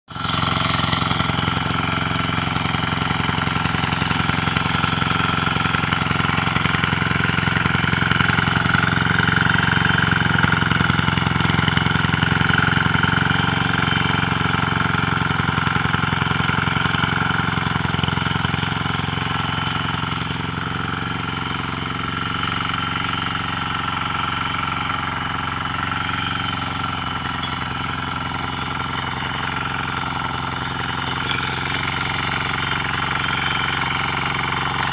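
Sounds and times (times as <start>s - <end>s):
tiller engine running: 0.1s - 34.9s.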